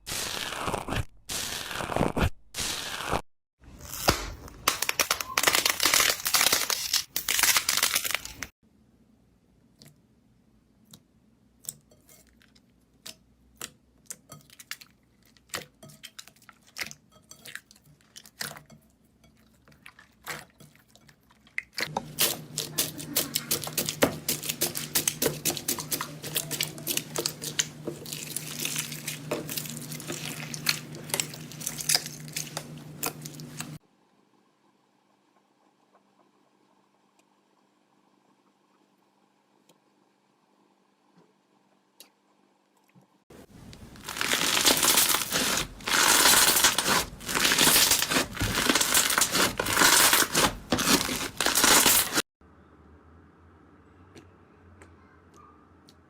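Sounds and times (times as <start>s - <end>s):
slime crunching and crackling: 3.9s - 8.5s, 21.4s - 33.8s, 43.8s - 52.2s.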